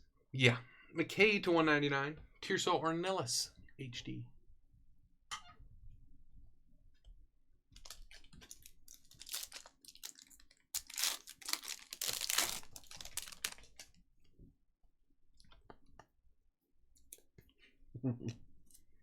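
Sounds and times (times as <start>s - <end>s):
card packaging tearing and crinkling: 7.8s - 13.8s.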